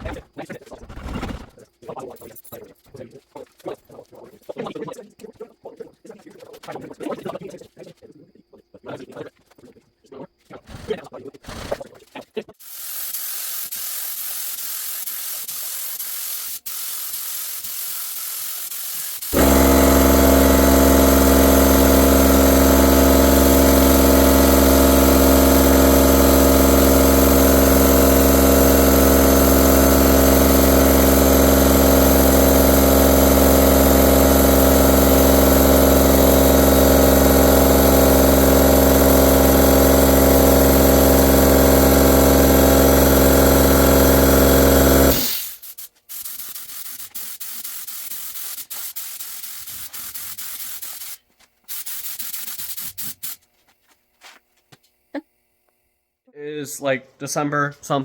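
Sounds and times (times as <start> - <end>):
steady hiss: 12.6 - 19.4
loud machine drone: 19.3 - 45.4.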